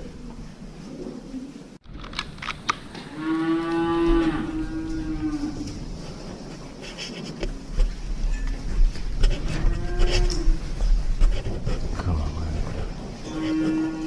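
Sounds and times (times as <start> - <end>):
cow mooing: 3.1 - 5.7, 13.2 - 14.0.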